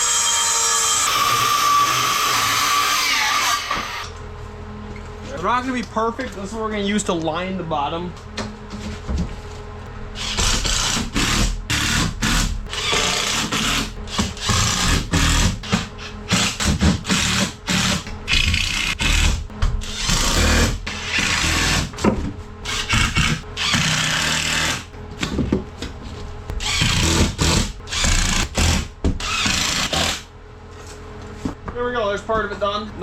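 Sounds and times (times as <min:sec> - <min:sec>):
power drill running in bursts: 0:10.2 - 0:15.5, 0:16.3 - 0:21.9, 0:22.6 - 0:24.9, 0:26.6 - 0:30.2.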